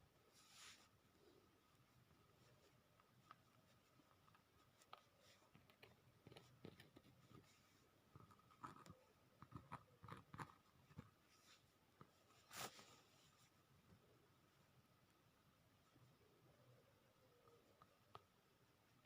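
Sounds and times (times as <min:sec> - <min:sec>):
faint clicks and small knocks: 0:02.0 - 0:11.2, 0:17.4 - 0:19.0.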